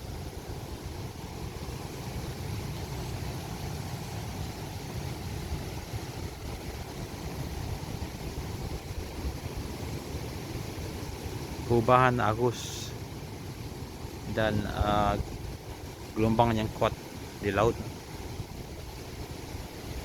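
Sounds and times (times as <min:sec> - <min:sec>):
sea surf rumble: 0:00.0 - 0:20.0
wind on microphone: 0:14.4 - 0:16.0.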